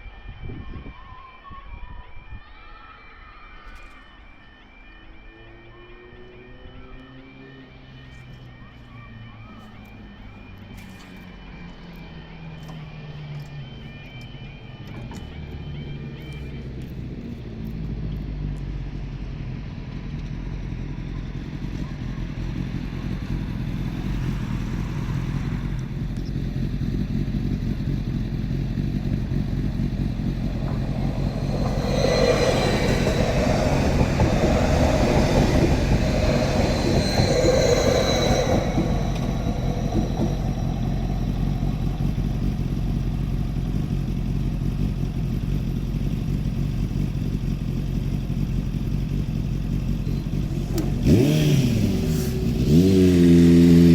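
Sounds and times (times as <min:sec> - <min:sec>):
two-pitch sustained tone: 0:00.0 - 0:17.9, 0:20.6 - 0:45.1
diesel train rumble: 0:06.5 - 0:53.9.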